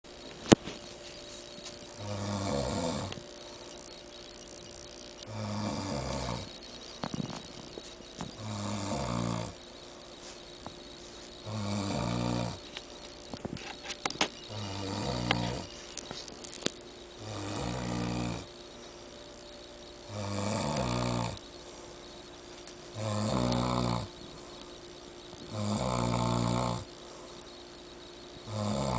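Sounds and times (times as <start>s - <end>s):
man snoring heavily: 2.0s - 3.2s, 5.2s - 6.6s, 8.3s - 9.6s, 11.4s - 12.6s, 14.5s - 15.7s, 17.2s - 18.5s, 20.0s - 21.4s, 22.9s - 24.4s, 25.4s - 26.9s, 28.4s - 28.9s.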